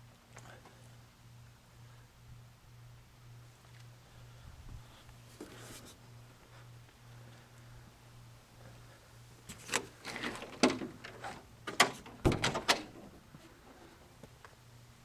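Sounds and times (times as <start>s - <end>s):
latch clicking and rattling: 9.5s - 13.2s
heavy thud: 12.2s - 12.7s.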